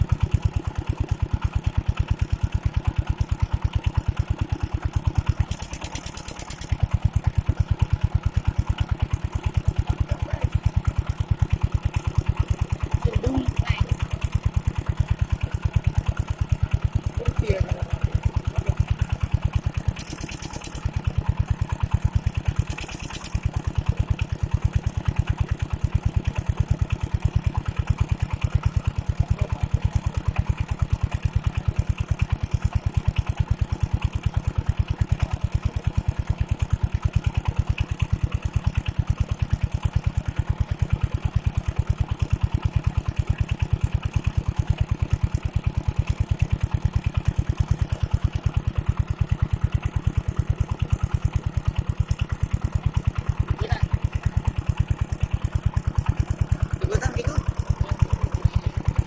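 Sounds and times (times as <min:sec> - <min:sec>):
water pump engine running: 0:00.0 - 0:59.0.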